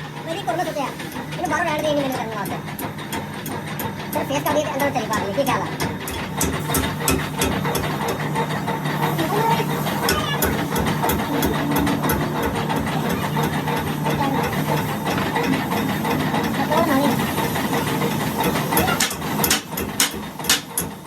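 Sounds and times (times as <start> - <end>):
machine humming: 0.0 - 20.5
people talking: 0.2 - 2.6, 4.1 - 5.8, 9.0 - 17.4, 18.7 - 19.2.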